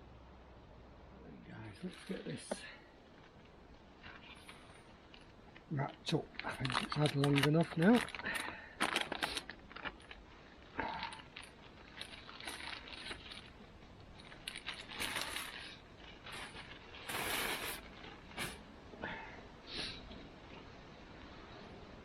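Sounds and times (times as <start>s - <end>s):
wrapping rustling and crinkling: 1.8s - 18.8s.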